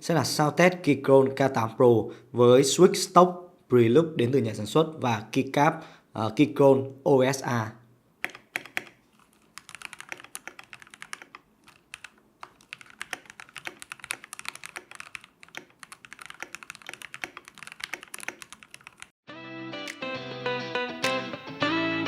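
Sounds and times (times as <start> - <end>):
mechanical keyboard typing: 8.2 - 19.1
guitar music: 19.3 - 22.0.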